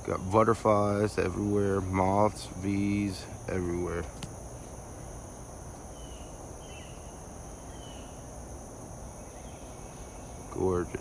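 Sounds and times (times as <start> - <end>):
insect chorus trilling: 0.0 - 11.0
outdoor background hiss: 0.0 - 11.0
faint chirps: 2.9 - 11.0.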